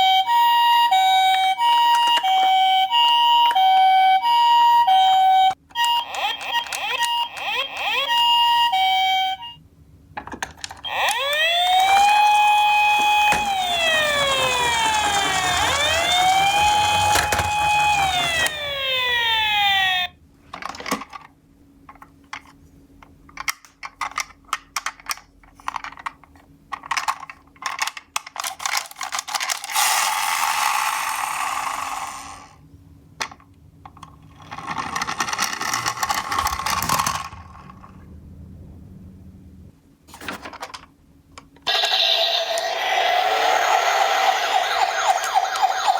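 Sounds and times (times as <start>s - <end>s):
toy electronic siren wailing: 0.0s - 9.6s, 10.8s - 20.2s, 29.7s - 32.5s, 41.6s - 45.9s
toy cars rattling rolling: 10.7s - 18.8s, 25.6s - 32.6s, 34.3s - 38.0s, 41.7s - 45.9s.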